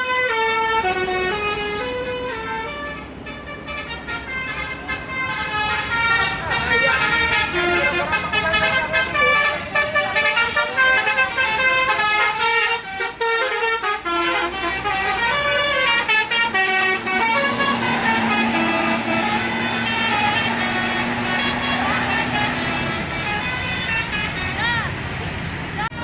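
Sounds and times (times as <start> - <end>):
bus horn playing a tune: 0.0 - 24.9.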